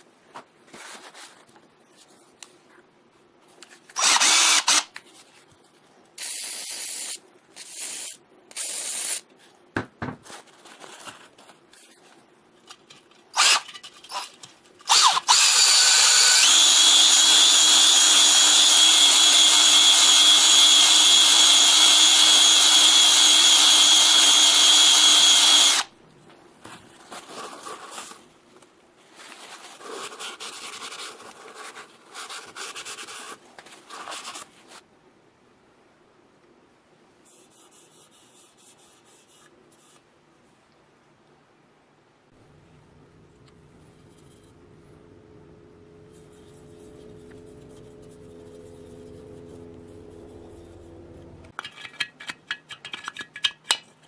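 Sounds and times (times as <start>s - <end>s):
power tool whining: 14.9s - 25.9s.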